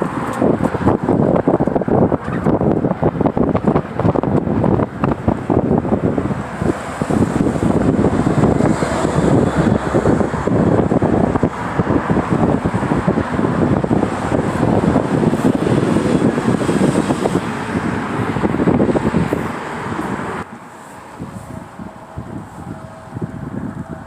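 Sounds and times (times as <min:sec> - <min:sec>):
wind buffeting microphone: 0:00.0 - 0:24.0.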